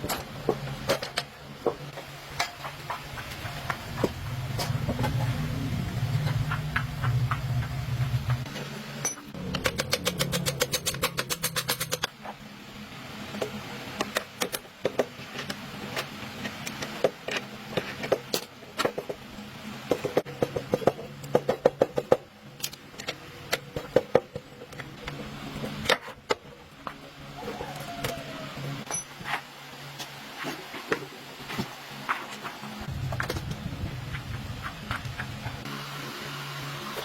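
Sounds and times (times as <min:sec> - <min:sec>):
metal tools clicking and clinking: 0:09.0 - 0:12.1, 0:28.8 - 0:29.3.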